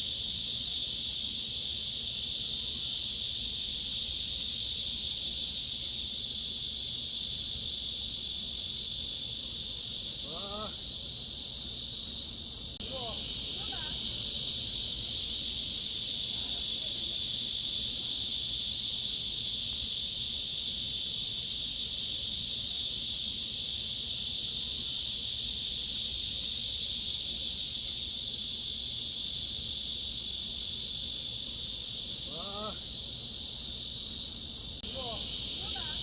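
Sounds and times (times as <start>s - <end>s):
cicadas shrilling: 0.0s - 36.0s.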